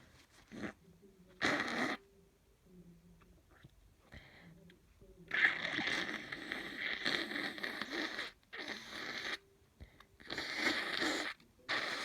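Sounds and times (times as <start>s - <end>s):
nose blowing and sniffing: 10.2s - 12.0s.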